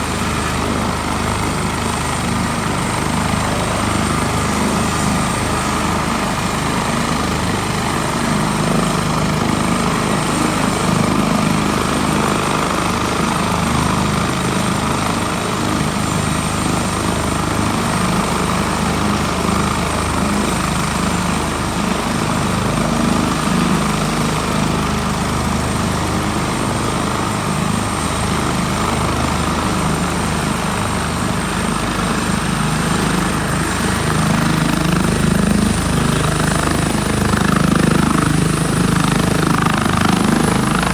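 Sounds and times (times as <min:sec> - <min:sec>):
helicopter engines and rotor: 0:00.0 - 0:40.9
high-pitched turbine whine: 0:33.0 - 0:40.9.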